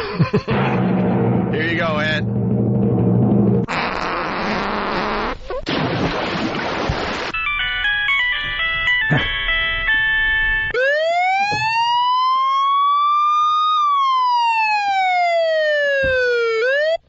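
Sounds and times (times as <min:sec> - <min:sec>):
siren-like whistle rising and falling: 0:10.8 - 0:17.0.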